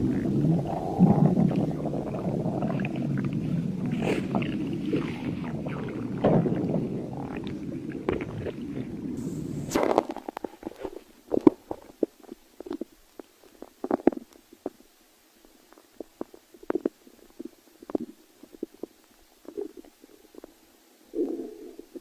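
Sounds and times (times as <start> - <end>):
stomach growling: 0.0 - 22.0.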